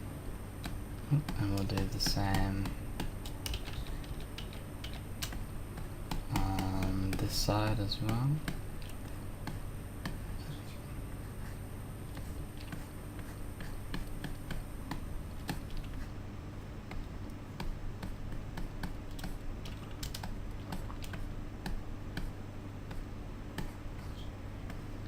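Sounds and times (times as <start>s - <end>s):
steady low hum: 0.0s - 25.0s
computer keyboard keys clicking: 0.6s - 7.4s, 13.9s - 16.0s, 18.6s - 22.3s.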